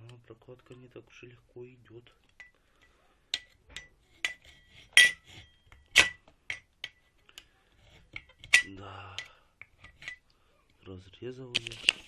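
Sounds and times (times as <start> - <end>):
metal tool clinking on metal: 2.3 - 7.1, 8.2 - 10.2.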